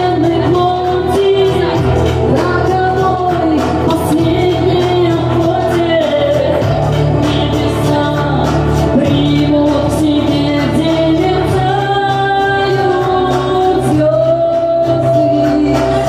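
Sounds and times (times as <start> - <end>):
karaoke backing track: 0.0 - 16.0
woman singing pop song: 0.0 - 16.0.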